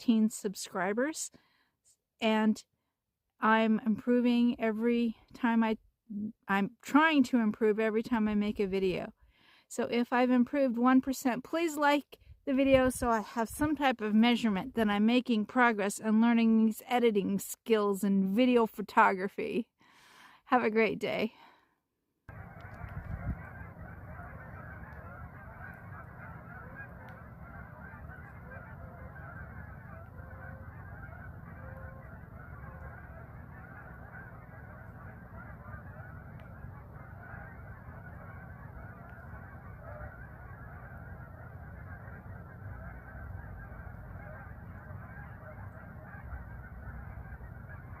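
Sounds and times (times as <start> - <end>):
chorus of bird calls: 22.3 - 48.0.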